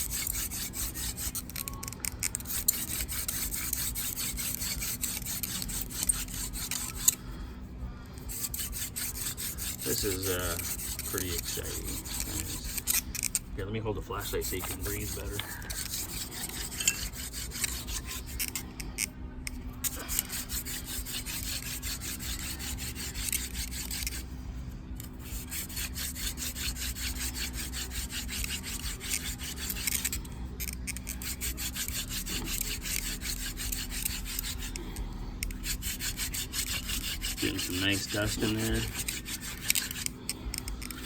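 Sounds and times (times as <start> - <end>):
wooden spindle rubbing in hearth: 0.0 - 19.2, 19.8 - 24.4, 25.0 - 41.0.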